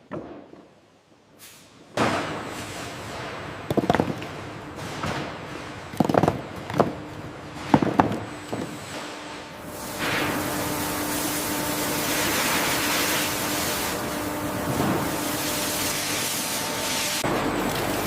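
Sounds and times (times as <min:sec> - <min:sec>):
hiss of background machinery: 0:01.2 - 0:03.6, 0:08.3 - 0:18.0.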